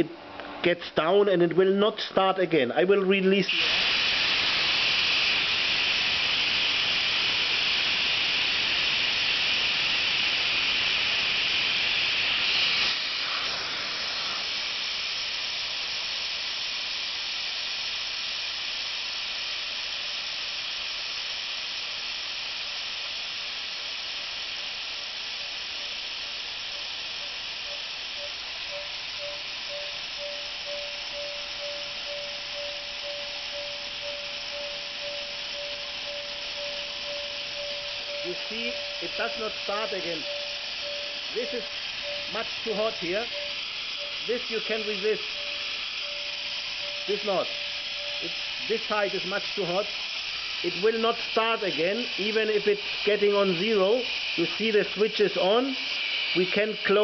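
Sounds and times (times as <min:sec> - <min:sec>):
compressed air hissing: 0:03.0 - 0:57.0
faint whistling tone: 0:27.2 - 0:49.3.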